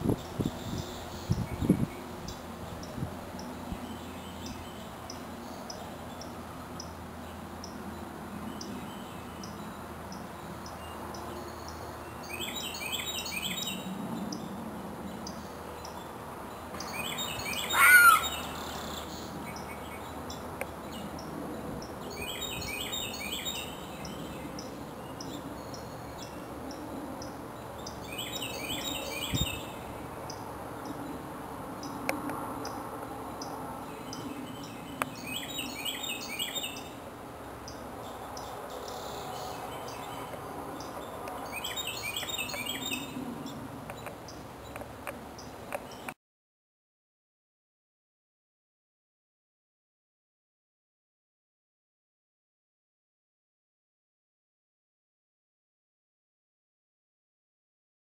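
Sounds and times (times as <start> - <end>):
birds singing quick high notes: 16.8 - 19.0
bird call sweeping in pitch: 16.9 - 19.0.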